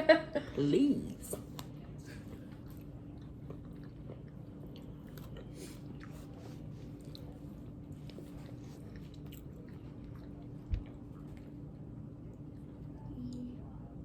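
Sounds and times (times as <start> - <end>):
steady low hum: 0.0 - 14.0
person chewing and crunching: 1.3 - 11.8.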